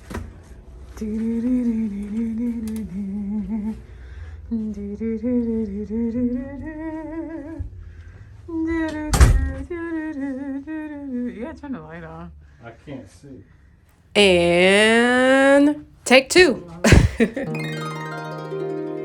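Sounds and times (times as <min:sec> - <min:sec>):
person humming: 0:14.2 - 0:17.6.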